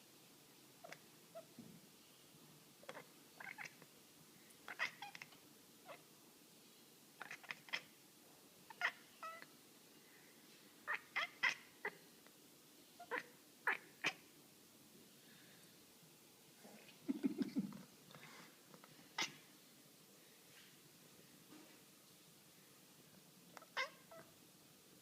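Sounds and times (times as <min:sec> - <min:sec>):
cat chirping and chattering: 0:00.8 - 0:01.6, 0:02.8 - 0:03.9, 0:04.6 - 0:06.0, 0:07.2 - 0:07.9, 0:08.7 - 0:09.5, 0:10.8 - 0:12.0, 0:13.0 - 0:14.2, 0:16.8 - 0:17.8, 0:19.1 - 0:19.5, 0:23.5 - 0:24.3.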